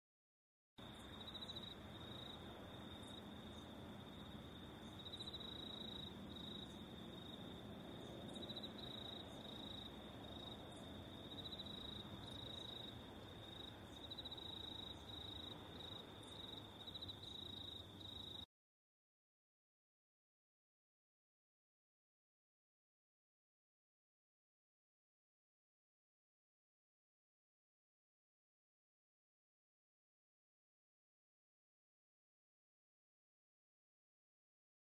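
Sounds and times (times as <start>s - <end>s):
insects trilling: 0.8s - 18.4s.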